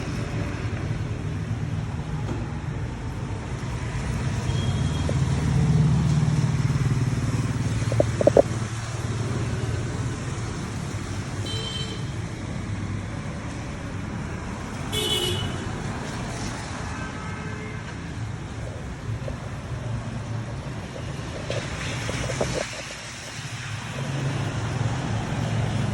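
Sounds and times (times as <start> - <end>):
vehicle engine low rumble: 0.0 - 15.0.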